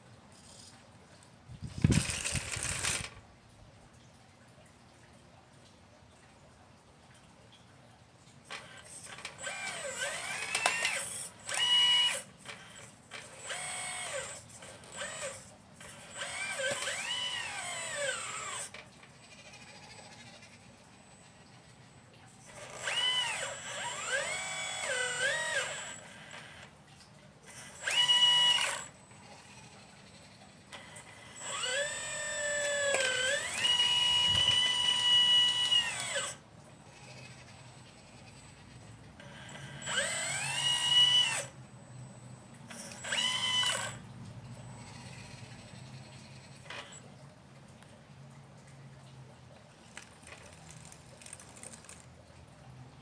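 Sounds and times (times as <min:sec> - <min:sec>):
toy excavator motors whining: 0:01.7 - 0:03.2, 0:08.5 - 0:26.8, 0:27.4 - 0:47.1.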